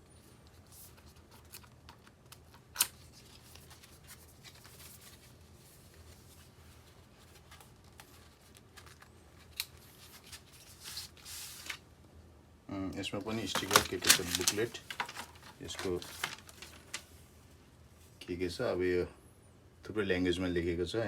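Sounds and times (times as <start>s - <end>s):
packaging rustling: 0.4s - 11.9s, 13.2s - 17.2s.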